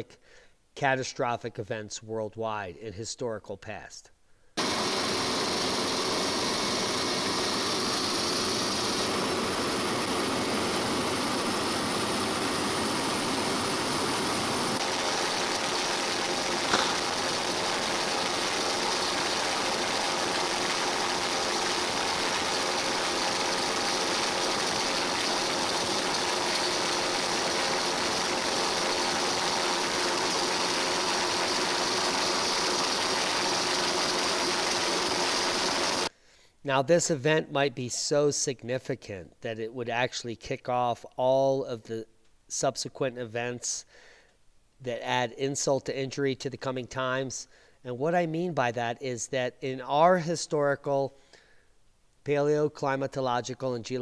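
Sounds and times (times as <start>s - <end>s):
engine-like noise with hiss: 4.6s - 36.1s.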